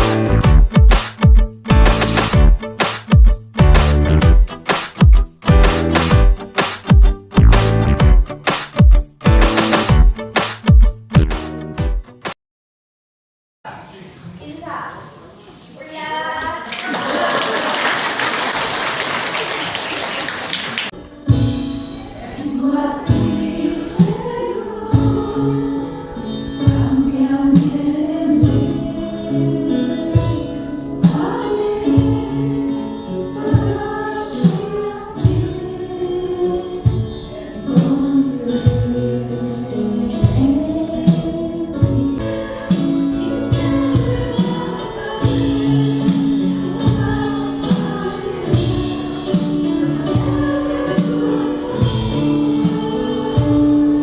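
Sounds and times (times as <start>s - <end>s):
band accompaniment with steady beat: 0.0s - 12.4s, 20.9s - 26.0s, 26.6s - 54.0s
group singing worship song: 22.0s - 54.0s.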